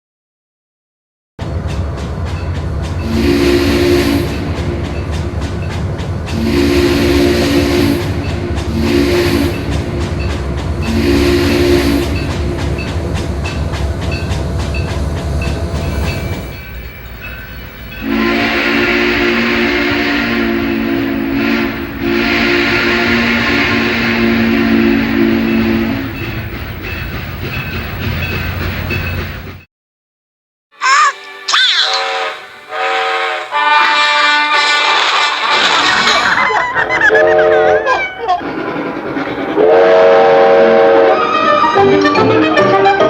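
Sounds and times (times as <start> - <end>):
moving train rumble and clatter: 1.4 - 29.6, 32.3 - 43.0
steam locomotive chime whistle: 3.0 - 5.7, 6.3 - 29.2, 30.9 - 35.6, 39.6 - 43.0.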